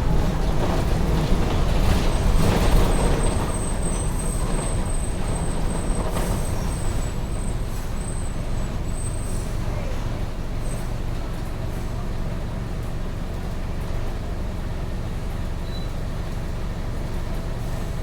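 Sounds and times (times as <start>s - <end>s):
bus engine and road rumble: 0.0s - 18.0s.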